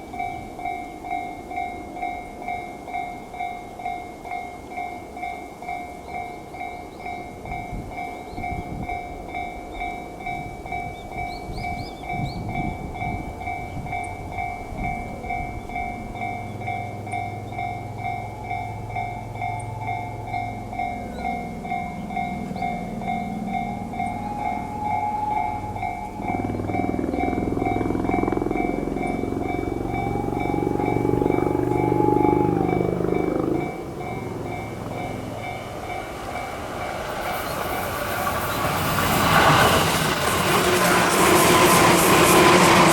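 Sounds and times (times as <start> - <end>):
low rumble: 17.1 - 36.8.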